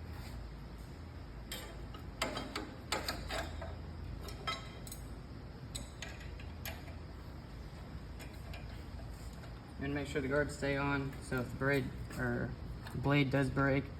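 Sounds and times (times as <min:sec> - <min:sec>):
light clicks and knocks of parts: 0:01.4 - 0:07.1, 0:07.7 - 0:13.2.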